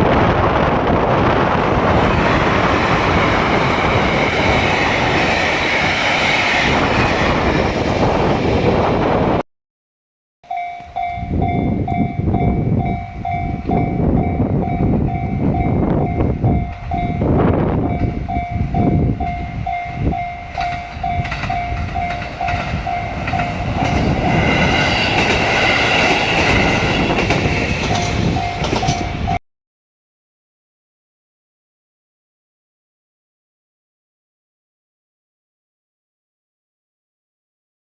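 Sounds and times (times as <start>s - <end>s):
diesel railcar engine and wheels: 0.0s - 9.4s, 10.5s - 29.4s
higher bright tone: 10.4s - 17.3s
level crossing warning bell: 10.4s - 29.4s.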